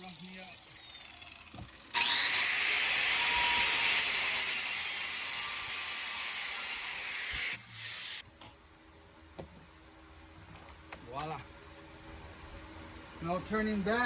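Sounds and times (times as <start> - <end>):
power tool cutting: 0.0 - 8.2.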